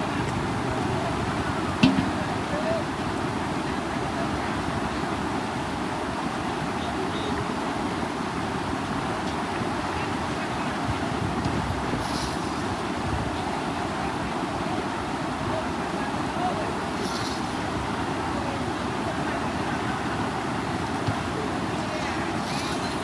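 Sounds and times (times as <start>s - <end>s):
faint voices: 0.0s - 23.0s
water rushing through sluice gate: 0.0s - 23.0s.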